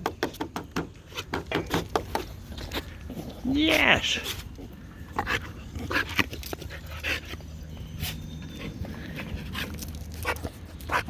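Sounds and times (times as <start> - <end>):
dog panting: 4.8 - 11.0.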